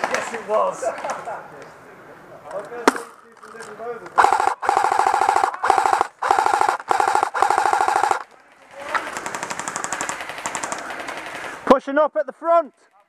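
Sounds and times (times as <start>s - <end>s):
airsoft gun firing bursts: 4.2s - 11.6s.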